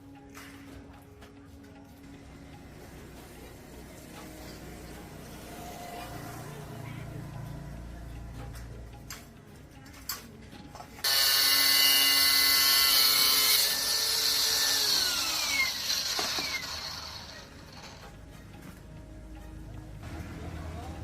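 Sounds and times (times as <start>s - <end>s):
small electric motor whining: 11.0s - 18.1s.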